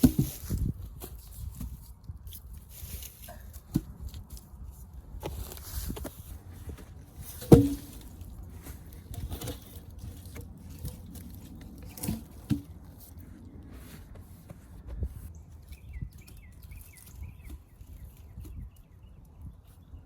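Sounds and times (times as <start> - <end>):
scraping and rustling: 0.0 - 15.3
wood knocking: 7.4 - 8.2.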